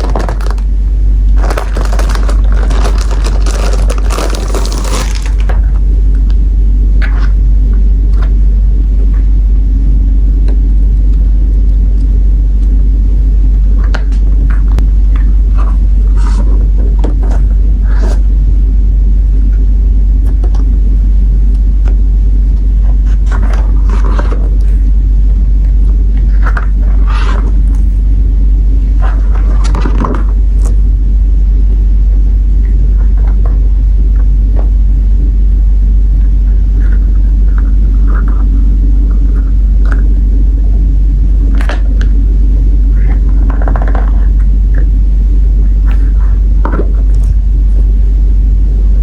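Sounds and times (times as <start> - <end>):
sticker sheets and packaging rustling: 0.0 - 0.7, 1.4 - 5.5
steady low rumble: 0.0 - 49.0.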